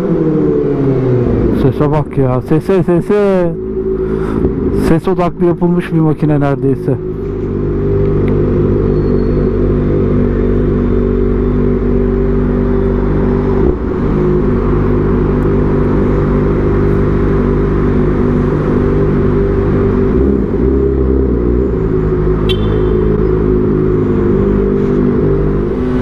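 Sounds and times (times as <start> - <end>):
motorcycle engine at high revs: 7.0 - 26.0.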